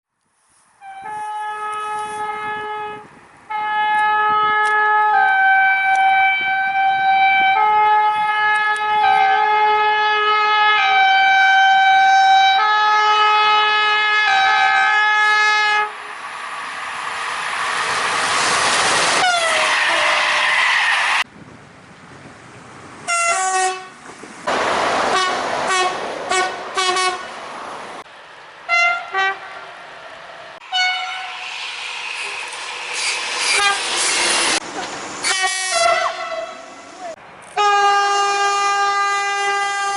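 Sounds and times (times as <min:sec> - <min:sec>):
short train horn blasts: 0:00.8 - 0:16.0, 0:19.2 - 0:20.3, 0:23.1 - 0:24.0, 0:25.1 - 0:27.3, 0:28.7 - 0:29.6, 0:30.6 - 0:31.4, 0:33.5 - 0:33.9, 0:35.2 - 0:36.7, 0:37.6 - 0:39.9
train horn playing tune: 0:00.8 - 0:16.0, 0:19.2 - 0:20.3, 0:23.1 - 0:24.0, 0:25.1 - 0:27.3, 0:28.7 - 0:29.6, 0:30.6 - 0:31.4, 0:33.5 - 0:33.9, 0:35.2 - 0:36.7, 0:37.6 - 0:39.9
train rushing past: 0:13.5 - 0:21.3, 0:22.7 - 0:37.4
train rumble: 0:13.5 - 0:39.9.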